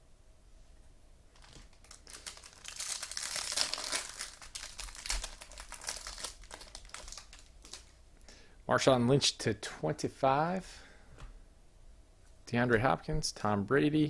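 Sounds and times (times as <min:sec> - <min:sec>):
plastic wrapping crinkling: 0:01.3 - 0:08.0.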